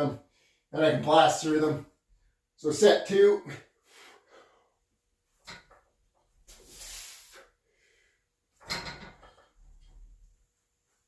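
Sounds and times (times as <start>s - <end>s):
hissing stretch: 6.4s - 7.6s.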